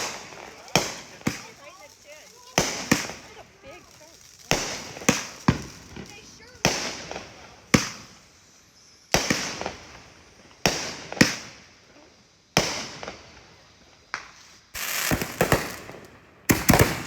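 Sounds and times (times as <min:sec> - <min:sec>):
fireworks bangs: 0:00.0 - 0:08.2, 0:09.1 - 0:11.7, 0:14.1 - 0:17.0
fireworks crackling: 0:00.0 - 0:17.0.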